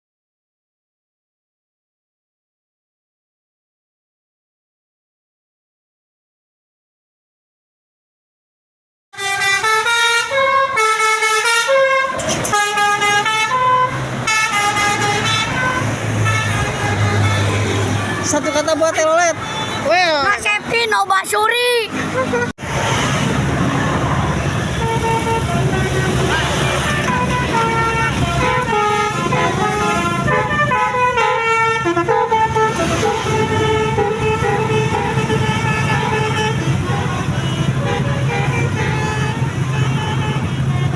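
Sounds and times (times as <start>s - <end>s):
musical air horn melody: 9.2s - 18.2s, 22.1s - 22.6s, 24.6s - 40.9s
low engine rumble: 23.2s - 40.9s.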